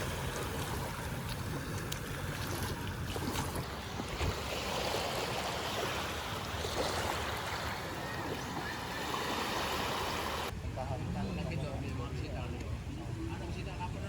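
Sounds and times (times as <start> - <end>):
sea water: 0.0 - 10.5.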